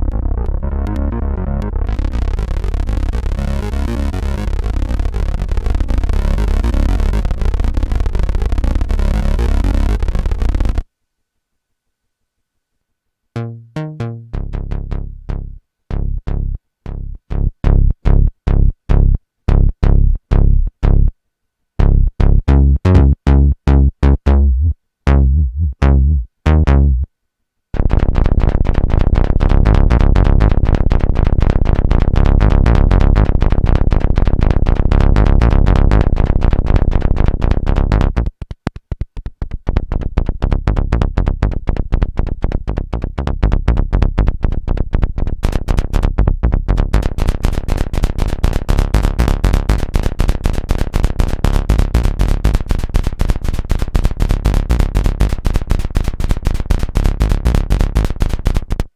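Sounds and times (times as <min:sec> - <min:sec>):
fast-pulsing synthesizer sound: 0:00.0 - 0:10.8
synthesizer staccato bass notes: 0:00.0 - 0:10.8, 0:13.4 - 0:21.1, 0:21.8 - 0:27.1, 0:27.8 - 0:38.4, 0:40.2 - 0:58.9.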